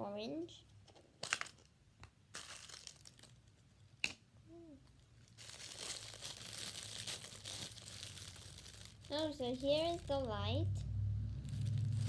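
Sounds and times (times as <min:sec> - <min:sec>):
packaging crinkling and tearing: 0:01.2 - 0:01.7, 0:02.3 - 0:03.7, 0:05.0 - 0:10.3, 0:11.4 - 0:12.0.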